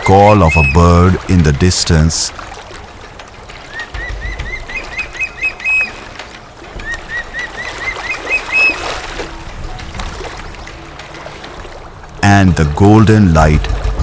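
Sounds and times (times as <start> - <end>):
bird calling: 0.0 - 1.3, 2.3 - 9.5.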